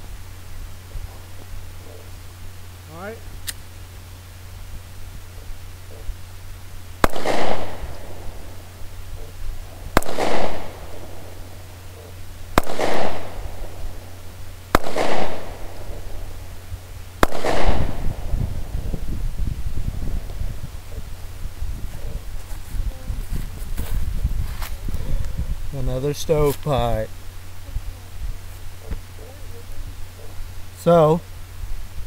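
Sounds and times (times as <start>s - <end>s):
pistol shots with echo: 7.0s - 8.6s, 9.9s - 16.4s, 17.2s - 18.3s.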